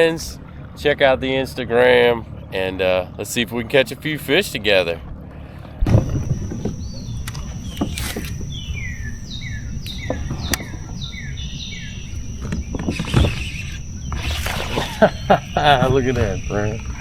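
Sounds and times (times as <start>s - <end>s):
thin high whine: 5.8s - 17.0s
sharp clicks: 5.9s - 17.0s
bird whistling: 6.0s - 17.0s.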